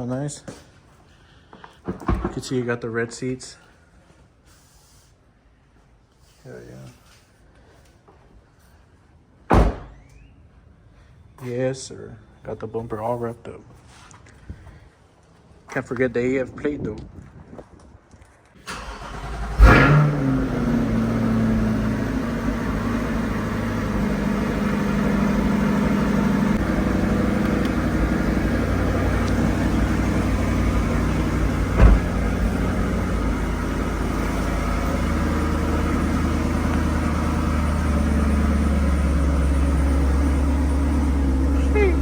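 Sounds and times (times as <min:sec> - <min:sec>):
car engine starting and idling: 0:18.6 - 0:42.0
car engine blip: 0:18.8 - 0:37.5.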